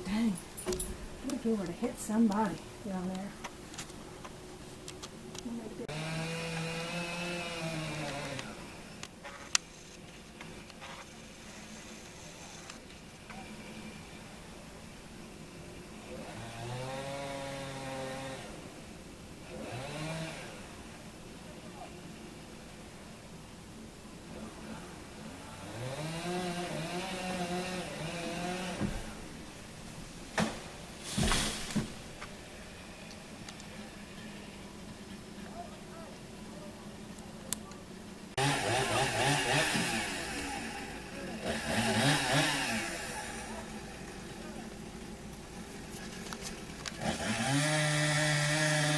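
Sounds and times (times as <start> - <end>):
chainsaw revving: 5.9 - 8.8, 16.0 - 18.6, 19.5 - 20.7, 25.6 - 29.2, 38.4 - 45.9, 46.5 - 48.9.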